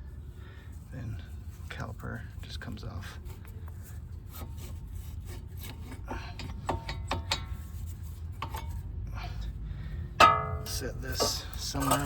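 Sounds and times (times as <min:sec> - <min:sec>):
steady low rumble: 0:07.5 - 0:12.0
metal scraping: 0:10.2 - 0:12.0.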